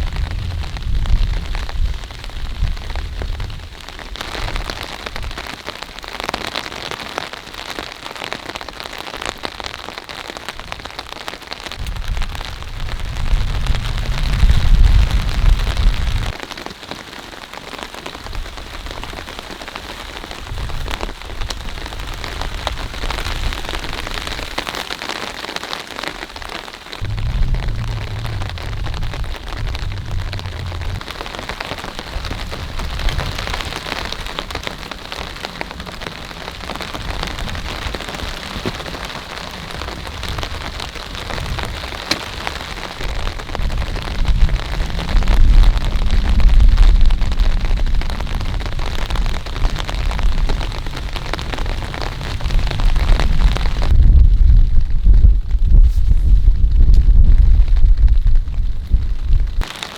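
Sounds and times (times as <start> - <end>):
deep low rumble: 0.0 - 5.4, 11.8 - 16.4, 27.0 - 59.7
heavy rain falling: 0.0 - 59.9.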